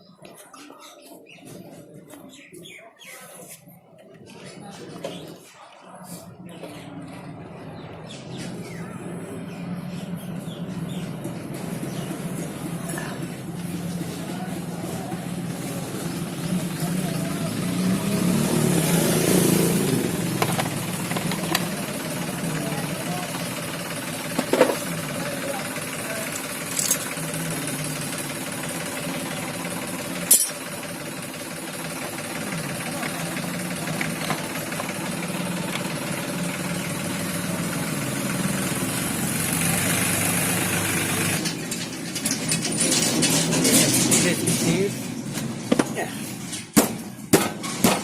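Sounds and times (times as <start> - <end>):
motorcycle engine running: 9.4 - 41.6.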